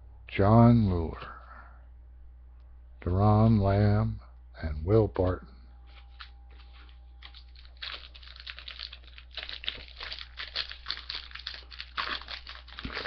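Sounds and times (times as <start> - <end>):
plastic wrapper crinkling and tearing: 6.2 - 13.0.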